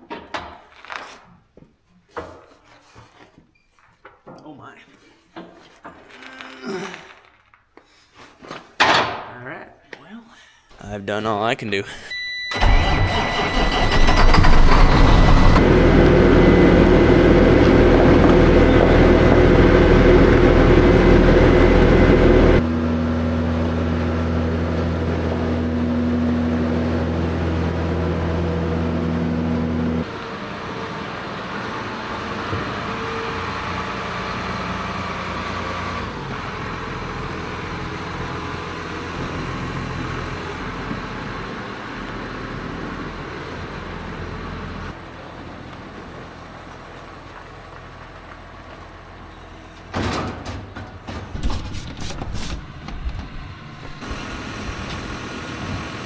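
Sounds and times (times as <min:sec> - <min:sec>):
grain vacuum running loudly: 0:14.7 - 0:36.5, 0:53.9 - 0:56.0.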